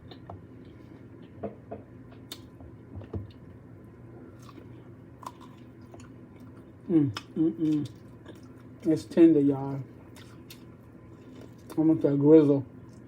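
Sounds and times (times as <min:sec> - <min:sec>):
faint low hum: 0:00.0 - 0:13.0
person chewing meat: 0:03.3 - 0:08.9, 0:09.9 - 0:11.9.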